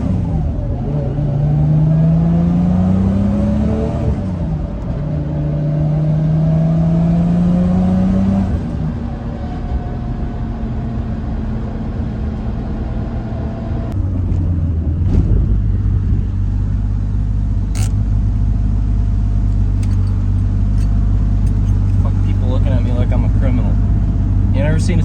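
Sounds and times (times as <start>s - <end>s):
car engine running: 0.0s - 25.0s
sharp click: 17.7s - 18.0s.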